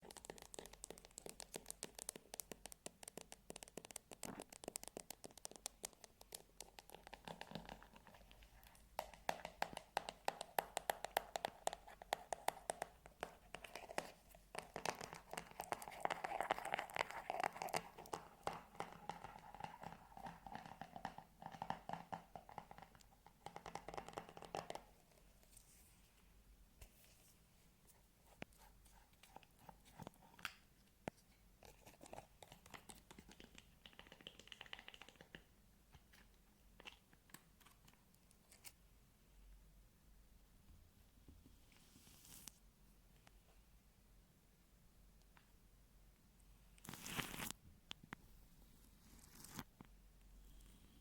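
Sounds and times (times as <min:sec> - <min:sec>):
fast scratching and tapping: 0:00.0 - 0:24.9, 0:31.6 - 0:35.4.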